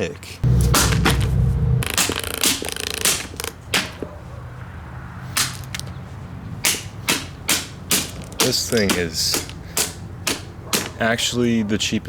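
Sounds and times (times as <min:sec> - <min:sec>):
low hum: 0:00.4 - 0:02.4
plastic fan housing being smashed: 0:01.8 - 0:04.0.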